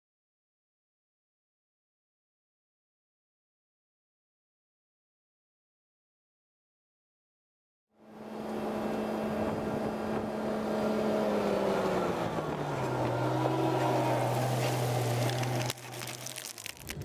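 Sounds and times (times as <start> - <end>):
train motor hum and running noise: 8.0 - 16.0.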